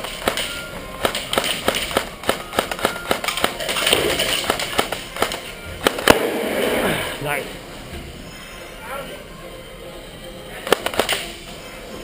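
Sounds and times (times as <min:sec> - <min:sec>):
airsoft gun shots: 0:00.0 - 0:07.0.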